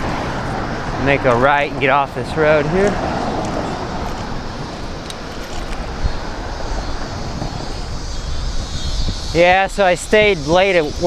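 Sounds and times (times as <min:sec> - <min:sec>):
bicycle tyre and road noise: 0:00.0 - 0:11.0
wind rush over microphone: 0:02.8 - 0:11.0.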